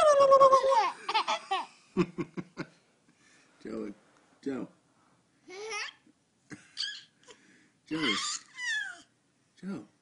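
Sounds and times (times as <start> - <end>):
baby high squeak: 6.8 - 7.2, 8.0 - 9.1
baby babbling: 8.0 - 9.1.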